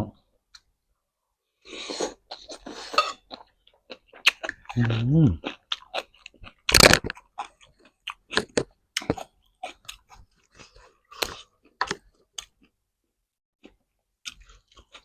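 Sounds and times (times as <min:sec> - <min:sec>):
person chewing food: 0:01.7 - 0:12.8, 0:13.6 - 0:15.0
crunchy bite: 0:04.2 - 0:07.6.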